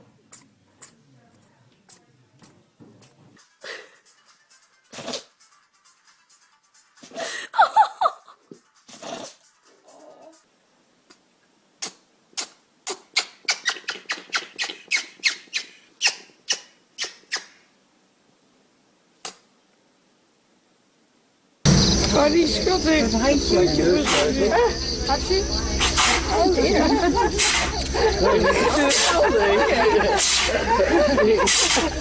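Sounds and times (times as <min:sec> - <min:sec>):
small animal sneezing: 0:04.9 - 0:05.3, 0:08.9 - 0:09.4, 0:11.8 - 0:15.0, 0:15.6 - 0:17.6, 0:19.2 - 0:19.4, 0:25.8 - 0:26.2, 0:27.4 - 0:27.7, 0:30.2 - 0:30.5, 0:31.5 - 0:31.9
small animal squeaking: 0:12.4 - 0:17.6, 0:23.9 - 0:26.6.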